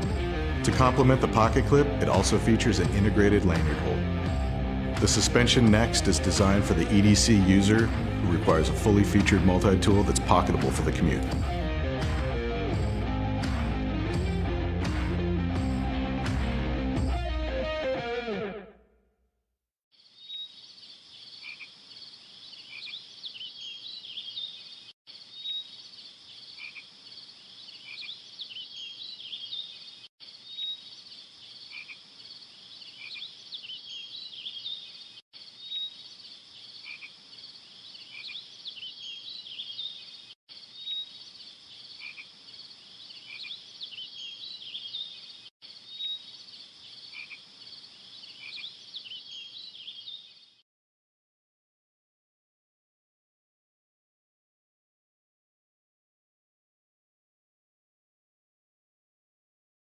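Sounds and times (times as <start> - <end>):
frogs calling: 20.0 - 24.5, 25.1 - 50.1
insects chirping: 20.0 - 50.6.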